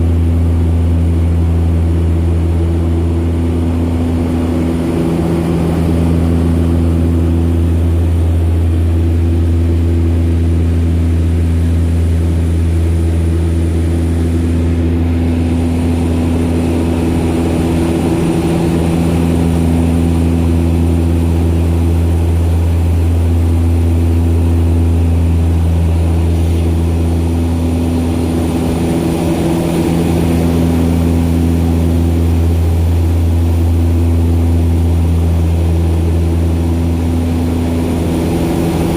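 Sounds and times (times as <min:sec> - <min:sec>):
propeller plane droning: 0:00.0 - 0:38.9.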